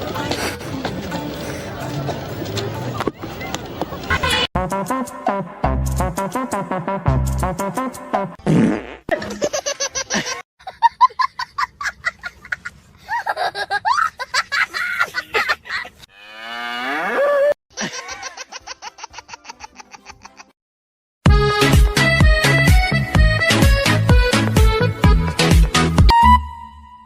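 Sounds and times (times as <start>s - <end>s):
buzzing fart sounds: 8.4s - 9.2s.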